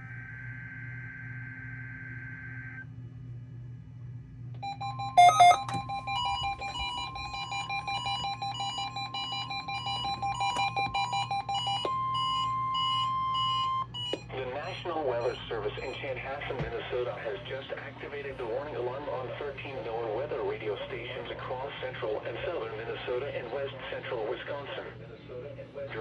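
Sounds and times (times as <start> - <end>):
warbling data tones: 4.6 - 12.9
rapid electronic beeping: 4.6 - 16.2
steady warning alarm tone: 4.6 - 16.6.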